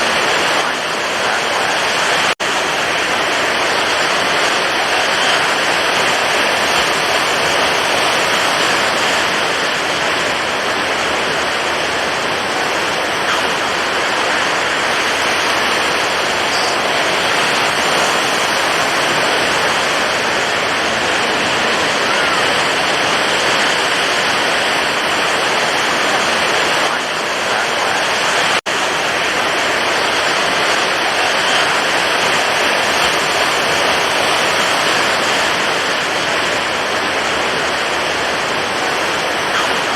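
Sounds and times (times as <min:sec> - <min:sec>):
stormy ocean waves: 0:00.0 - 0:39.9.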